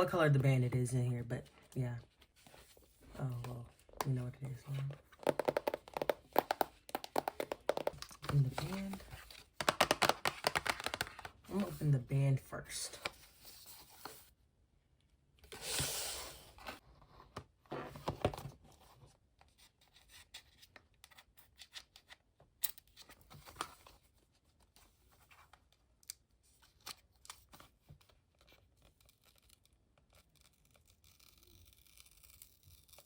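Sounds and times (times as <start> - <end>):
box rustling: 1.6 - 11.8.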